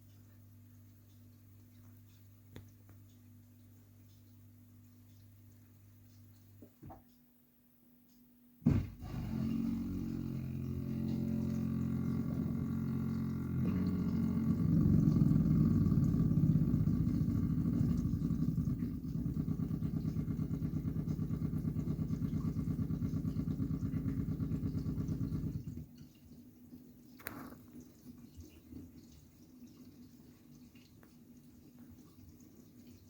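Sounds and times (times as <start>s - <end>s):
dishwasher low drone: 8.6s - 26.0s.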